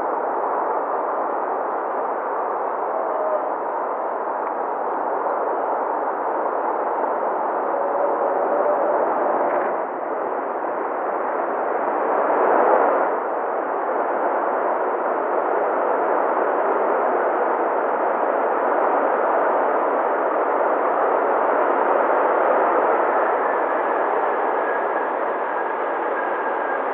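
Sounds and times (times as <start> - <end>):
radio hiss: 0.6 - 5.5.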